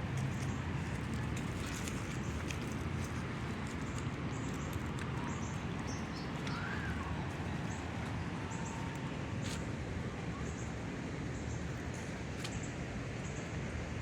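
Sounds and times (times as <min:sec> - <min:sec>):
small birds chirping: 0:02.1 - 0:09.6.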